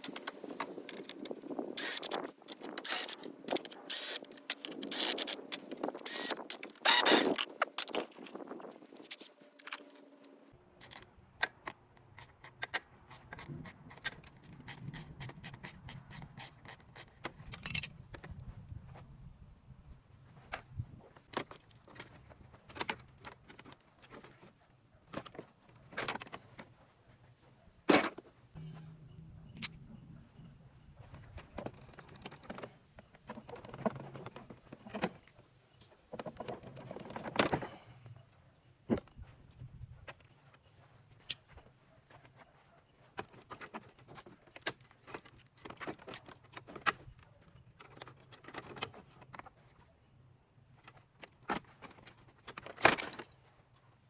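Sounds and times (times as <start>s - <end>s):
faint steady high whine: 0.0s - 54.0s.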